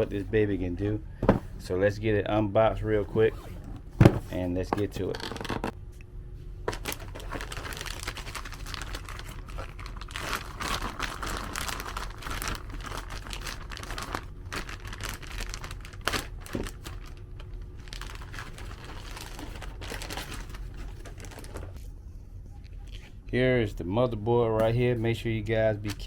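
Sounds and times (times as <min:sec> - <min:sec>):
packaging rustling: 0:06.7 - 0:21.8.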